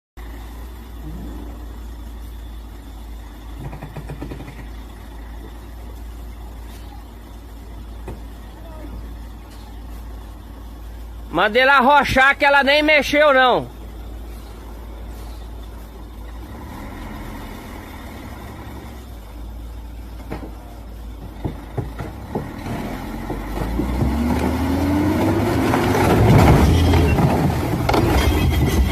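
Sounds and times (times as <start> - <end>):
truck diesel engine rumbling and revving: 0.2 - 28.9
sharp knocks: 3.6 - 4.8, 21.2 - 22.6.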